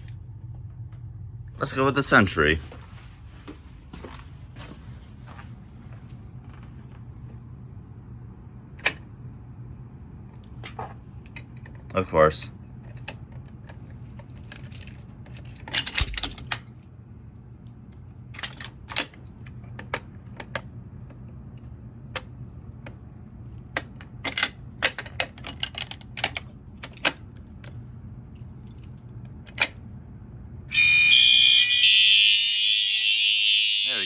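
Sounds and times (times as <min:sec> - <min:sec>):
low steady hum: 0:00.0 - 0:34.0
fire alarm pull station clicks: 0:08.8 - 0:09.0, 0:14.2 - 0:16.7, 0:23.6 - 0:27.4
fire alarm sounding: 0:30.7 - 0:34.0.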